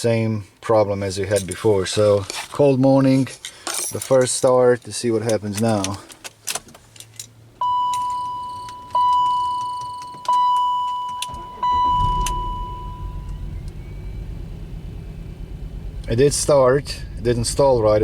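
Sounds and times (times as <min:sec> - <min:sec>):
dashboard warning chimes: 0:07.6 - 0:15.9
engine cranking and starting: 0:11.3 - 0:16.6
engine misfiring rumble: 0:11.3 - 0:18.0.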